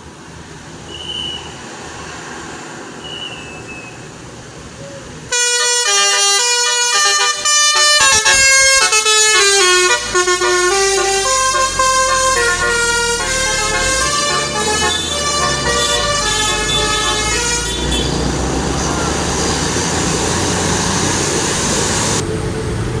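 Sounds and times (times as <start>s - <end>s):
multi-tone musical air horns: 5.3s - 19.0s.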